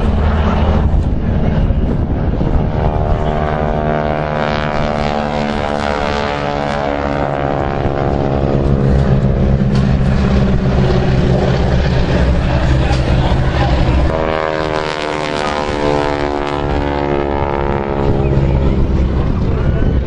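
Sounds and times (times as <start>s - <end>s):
low rumble: 0.0s - 20.0s
propeller aircraft flying past: 0.0s - 20.0s.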